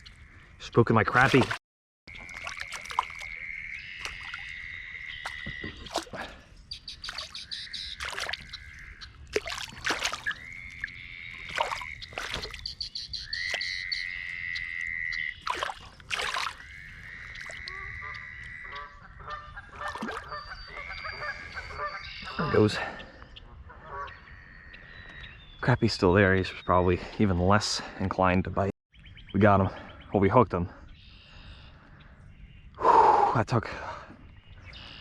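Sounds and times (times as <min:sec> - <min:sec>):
frogs trilling: 0:00.0 - 0:25.7.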